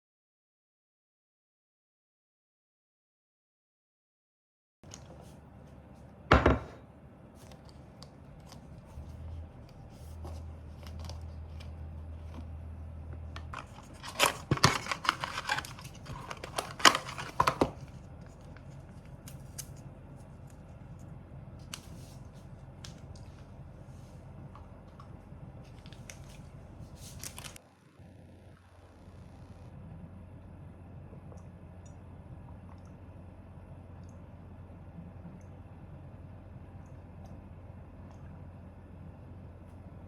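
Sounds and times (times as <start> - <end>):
rustling and crinkling: 7.3 - 27.6.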